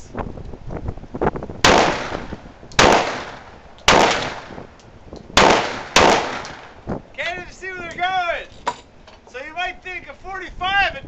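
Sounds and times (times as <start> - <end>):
pistol shots: 1.6 - 4.7, 5.4 - 6.8.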